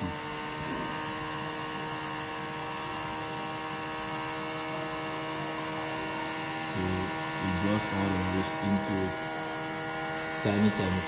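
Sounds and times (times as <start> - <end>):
small motor fan humming: 0.0 - 11.0.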